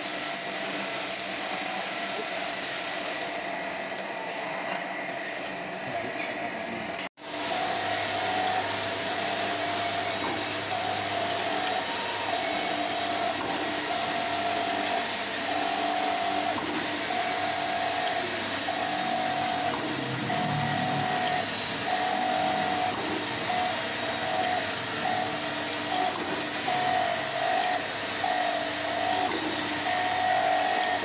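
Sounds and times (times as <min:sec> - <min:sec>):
surface grinding machine: 0:00.0 - 0:31.0
recurring machine tone: 0:06.9 - 0:31.0.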